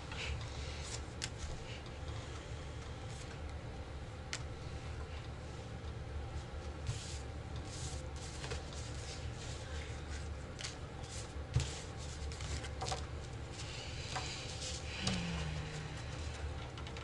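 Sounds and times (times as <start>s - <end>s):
steady low hum: 0.0s - 17.0s
playing cards slapping and rustling: 7.9s - 9.3s, 10.1s - 13.2s.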